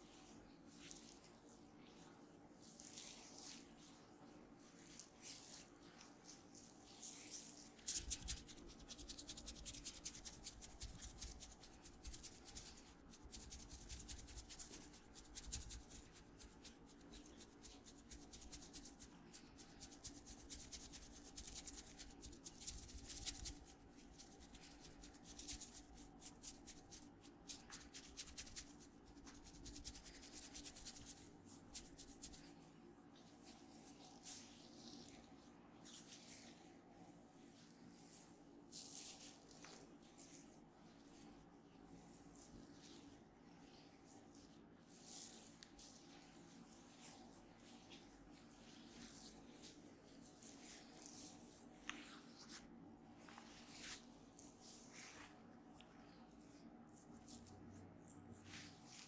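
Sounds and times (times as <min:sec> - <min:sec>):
hands rubbing oiled hair and skin: 0:00.0 - 0:02.0, 0:02.6 - 0:59.0.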